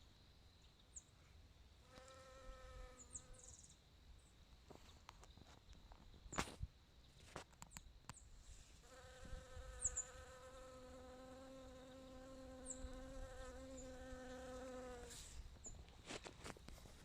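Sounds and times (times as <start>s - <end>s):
bee buzzing: 1.9s - 3.4s, 8.8s - 15.3s.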